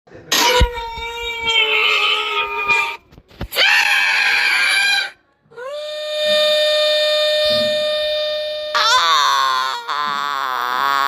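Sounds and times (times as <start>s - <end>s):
high-pitched cartoon screams: 3.5s - 11.0s.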